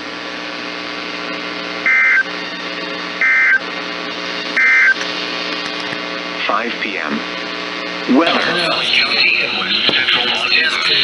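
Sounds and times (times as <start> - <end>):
steady hum: 0.0 - 11.0
two-tone digital data bursts: 1.8 - 2.3, 3.2 - 3.7, 4.6 - 5.0.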